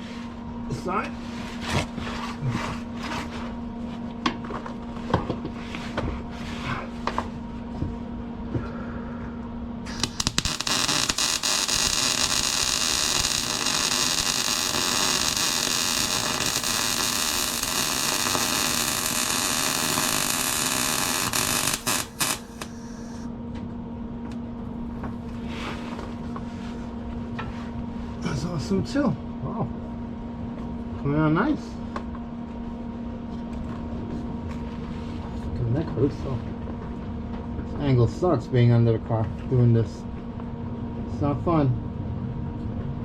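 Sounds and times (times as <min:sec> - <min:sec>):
steady low hum: 0:00.0 - 0:43.0
welder arc crackling sizzle: 0:09.9 - 0:23.2.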